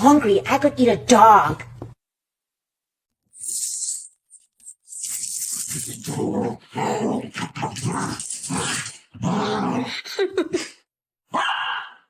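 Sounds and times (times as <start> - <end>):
dog growling: 5.8 - 10.1.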